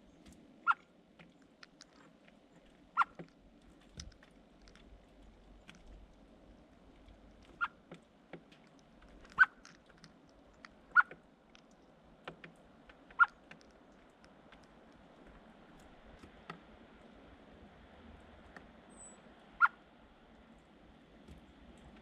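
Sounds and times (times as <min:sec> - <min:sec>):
birds tapping and clicking: 0:00.0 - 0:16.7.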